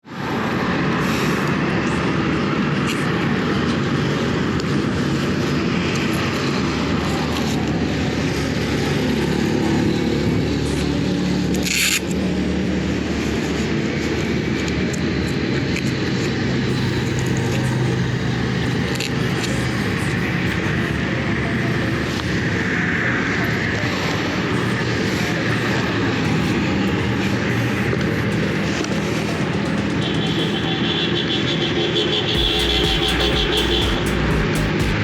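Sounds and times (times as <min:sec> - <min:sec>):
motorcycle engine running: 0:16.7 - 0:30.7, 0:32.4 - 0:35.0.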